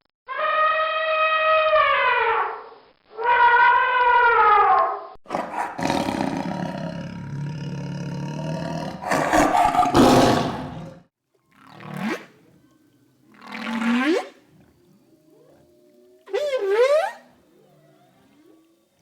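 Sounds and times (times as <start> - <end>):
animal pitched call: 0.3 - 11.0
deep animal roar: 5.3 - 11.0.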